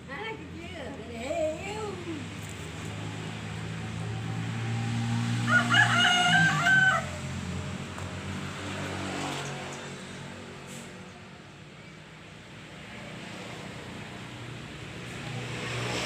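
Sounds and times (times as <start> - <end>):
rooster crowing: 5.3 - 7.4.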